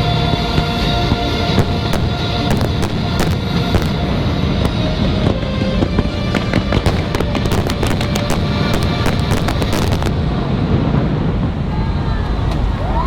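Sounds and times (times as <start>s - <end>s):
loud music: 0.0s - 10.3s
fireworks crackling: 0.0s - 11.9s
low rumble: 0.0s - 13.0s.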